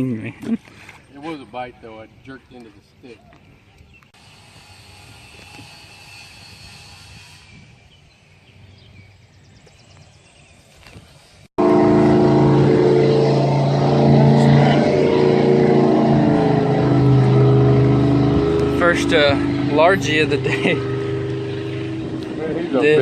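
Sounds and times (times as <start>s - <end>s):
outboard motor running: 11.6s - 23.0s.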